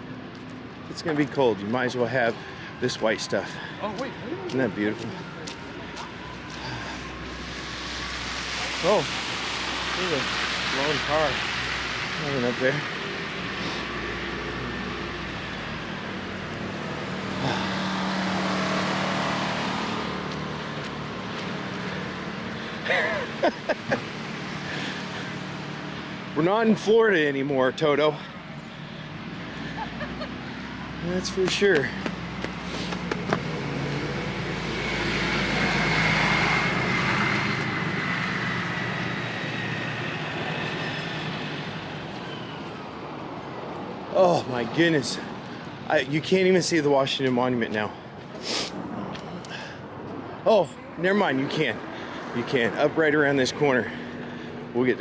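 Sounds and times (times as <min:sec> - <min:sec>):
road noise: 0:00.0 - 0:55.0
passing engine: 0:01.0 - 0:55.0.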